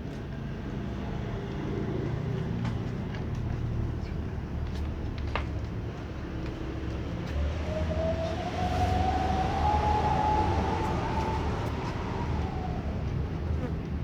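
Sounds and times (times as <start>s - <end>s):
low traffic rumble: 0.0s - 14.0s
siren wail: 7.4s - 13.5s.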